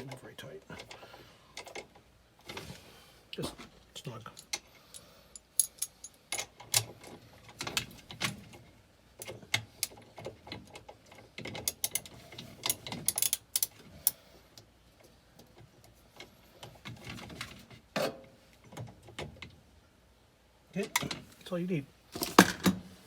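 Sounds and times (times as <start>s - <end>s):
metal tools clinking: 4.3s - 6.5s.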